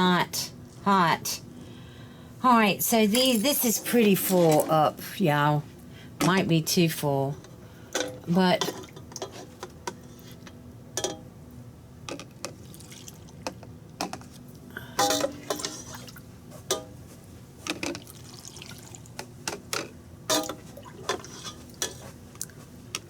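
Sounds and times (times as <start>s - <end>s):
liquid splashing and dripping: 12.4s - 13.6s, 17.8s - 19.2s.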